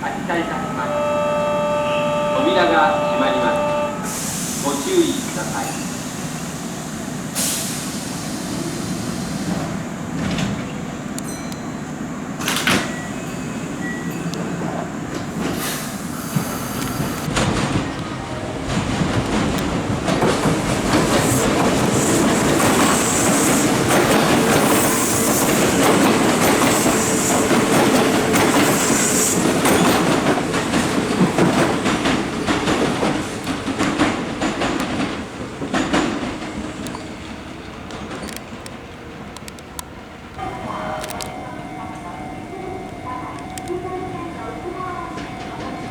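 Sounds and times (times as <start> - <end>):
wheels clacking over rail joints: 14.2 - 39.8
electric train running: 15.2 - 34.1.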